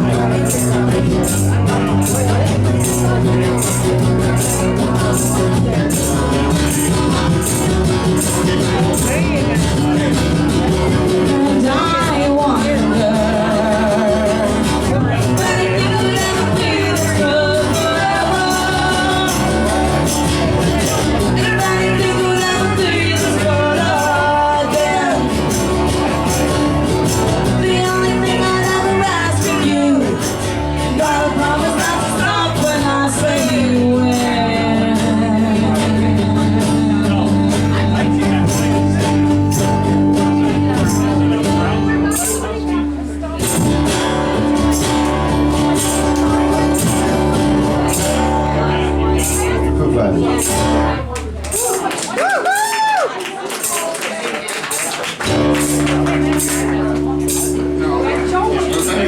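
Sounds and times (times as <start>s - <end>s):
steady low bass notes: 0.0s - 51.7s, 55.2s - 59.0s
guitar: 0.0s - 59.0s
person singing: 10.7s - 26.6s, 27.2s - 42.9s.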